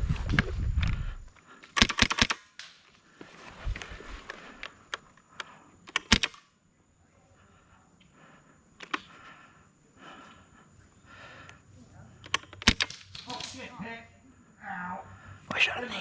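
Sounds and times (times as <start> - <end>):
airsoft gun shots clicking: 1.6 - 2.9, 5.9 - 6.5, 12.3 - 13.7.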